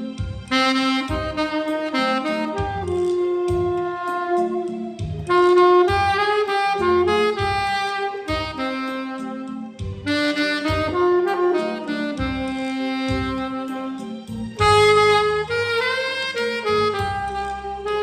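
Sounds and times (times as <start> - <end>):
saxophone melody: 0.0 - 18.0
pulsing low bass line: 2.4 - 8.6.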